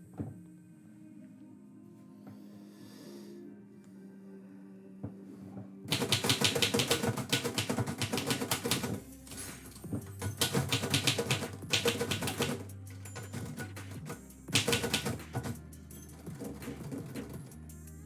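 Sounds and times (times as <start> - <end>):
typewriter keys clattering: 5.9 - 15.6.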